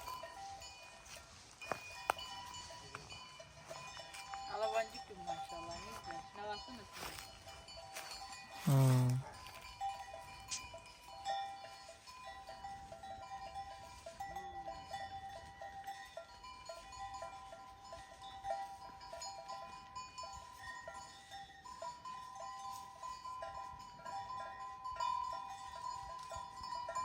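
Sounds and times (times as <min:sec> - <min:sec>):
sheep bells clinking: 0:00.0 - 0:27.0
faint bleat: 0:08.6 - 0:09.3.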